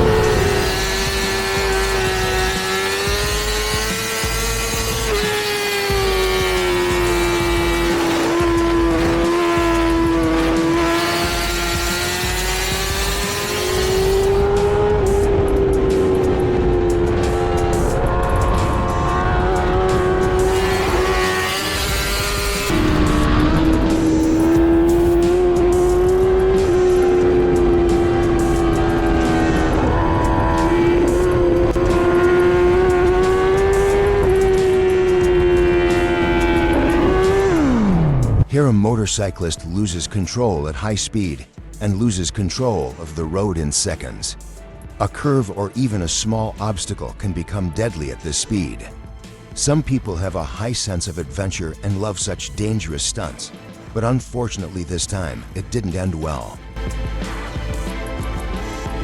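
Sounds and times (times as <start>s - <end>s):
motorcycle engine running high: 0.0s - 38.5s.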